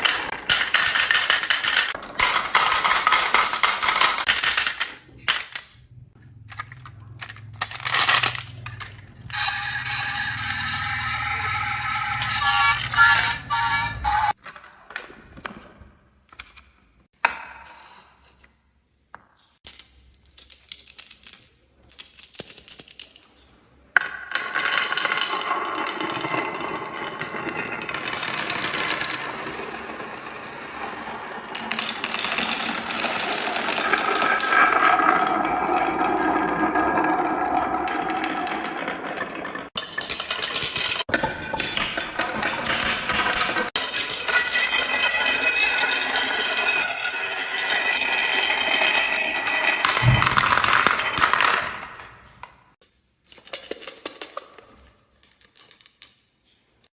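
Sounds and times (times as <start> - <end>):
marbles clattering on wooden run: 0.0 - 5.7, 6.5 - 14.3, 24.0 - 52.5.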